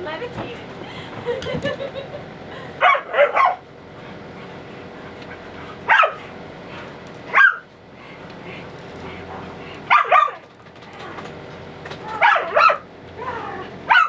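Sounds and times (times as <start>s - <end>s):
dog barking: 2.8s - 3.6s, 5.9s - 6.2s, 7.3s - 7.7s, 9.9s - 10.4s, 12.1s - 12.8s.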